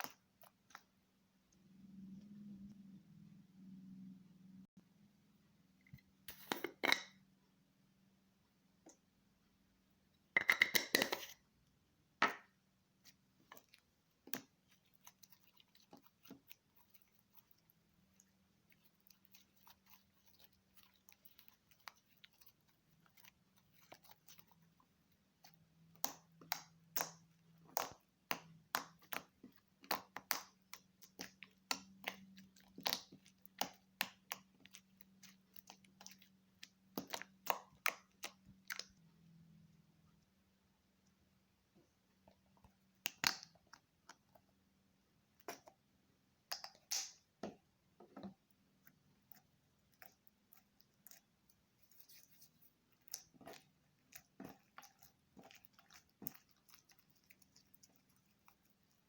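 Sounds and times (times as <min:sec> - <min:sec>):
faint steady hum: 0:00.5 - 0:06.4.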